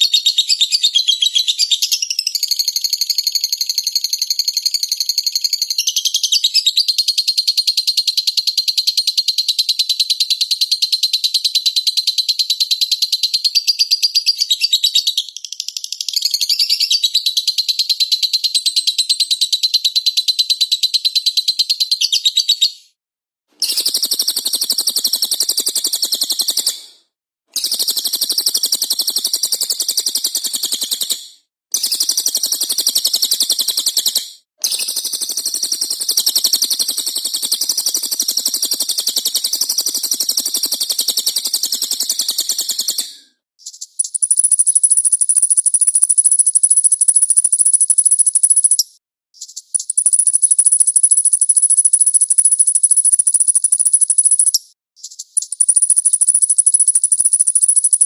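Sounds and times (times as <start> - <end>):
small songbirds chirping and chattering: 0.0 - 22.8, 43.6 - 48.8, 49.4 - 58.0.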